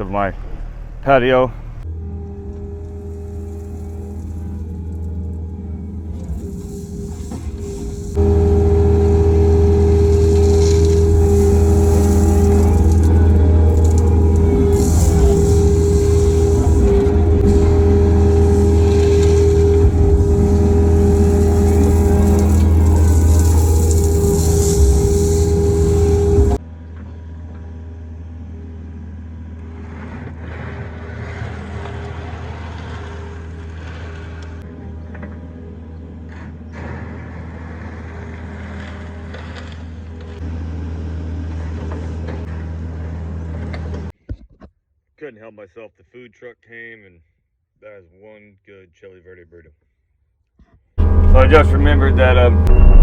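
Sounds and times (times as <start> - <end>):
excavator diesel drone: 0.0 - 26.6, 51.0 - 53.0
steady tone: 0.0 - 26.6, 51.0 - 53.0.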